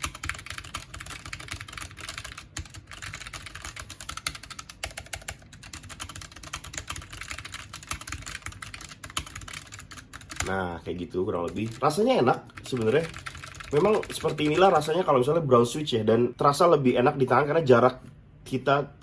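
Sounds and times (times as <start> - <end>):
mechanical keyboard typing: 0.0 - 10.6, 11.3 - 15.1.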